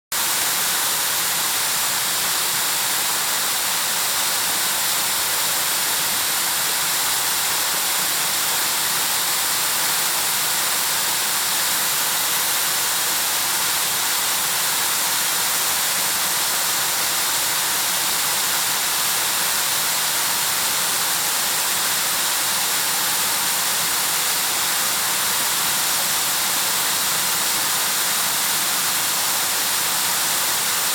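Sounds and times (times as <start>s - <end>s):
waterfall pouring: 0.2s - 30.9s.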